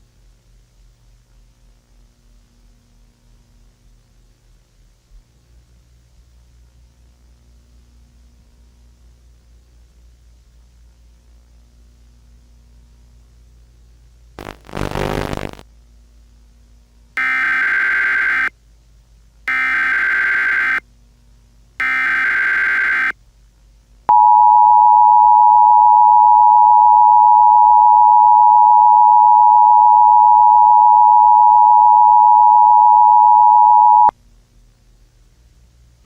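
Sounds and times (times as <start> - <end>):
warbling data bursts: 14.4 - 15.6, 17.2 - 18.5, 19.5 - 20.8, 21.8 - 23.1
two-tone attention signal: 24.1 - 34.1.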